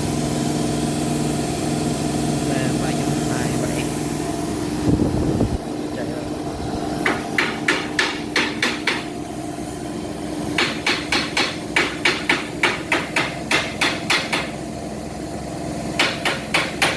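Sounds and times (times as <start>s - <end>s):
compressor humming: 0.0s - 16.9s
sharp evenly spaced knocks: 7.0s - 9.1s, 10.6s - 14.6s, 16.0s - 16.9s.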